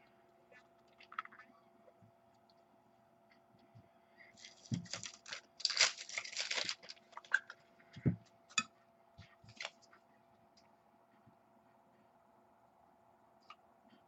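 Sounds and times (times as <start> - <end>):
clicks and crinkles: 4.4 - 7.6, 9.5 - 9.9
plastic packaging rustling: 4.4 - 7.6, 9.5 - 9.8.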